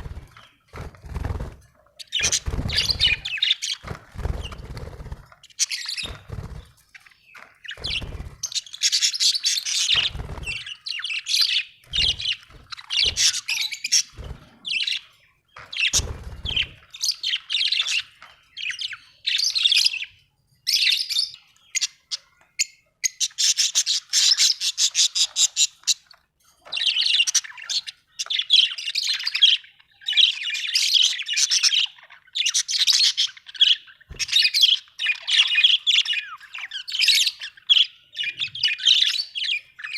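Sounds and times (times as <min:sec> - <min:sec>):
budgerigar chirping and chattering: 0:02.0 - 0:04.8, 0:07.6 - 0:15.2.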